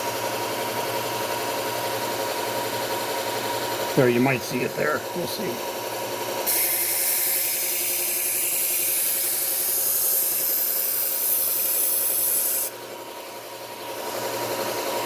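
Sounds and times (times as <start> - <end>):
steel grinding on belt sander: 6.5 - 12.7.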